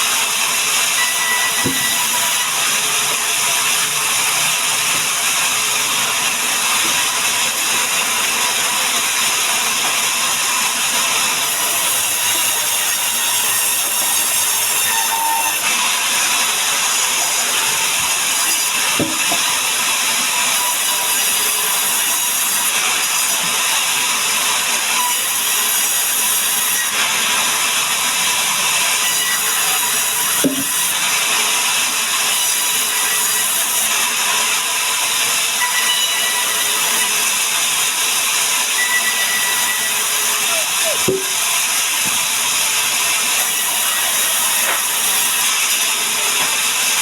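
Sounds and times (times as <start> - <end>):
saw cutting through log: 0.0 - 47.0
short knock: 1.7 - 1.9.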